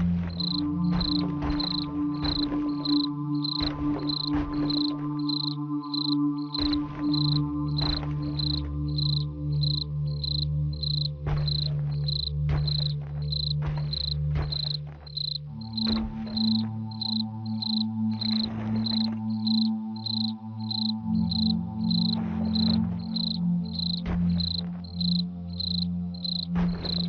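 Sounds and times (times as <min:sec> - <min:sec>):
low droning chord: 0:00.0 - 0:11.3
crickets chirping: 0:00.0 - 0:27.0.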